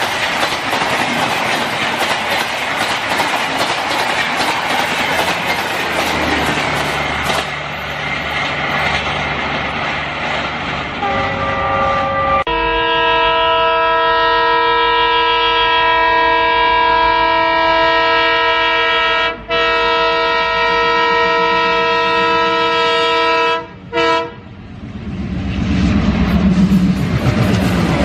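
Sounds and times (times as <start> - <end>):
low train rumble: 0.0 - 28.0
train horn blast: 11.0 - 24.5.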